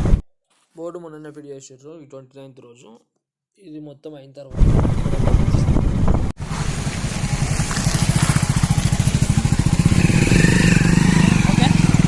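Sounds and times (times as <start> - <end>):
motorcycle engine running: 4.6 - 12.0.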